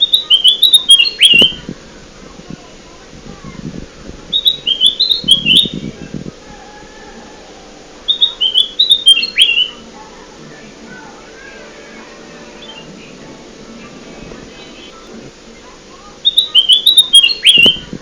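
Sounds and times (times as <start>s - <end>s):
bird chirping: 0.0s - 1.6s, 4.3s - 6.0s, 8.0s - 9.8s, 12.5s - 13.9s, 14.5s - 15.2s, 16.2s - 17.9s.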